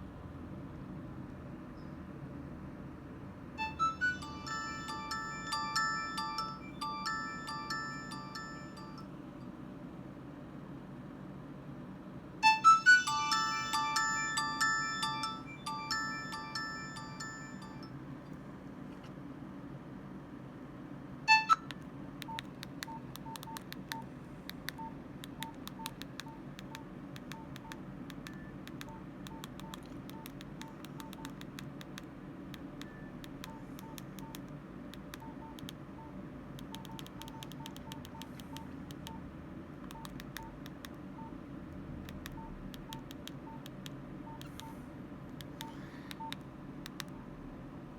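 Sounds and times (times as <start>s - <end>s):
phone keypad beeps and clicks: 3.6s - 9.0s, 12.4s - 17.9s, 21.3s - 41.4s, 42.1s - 44.8s, 45.4s - 47.2s.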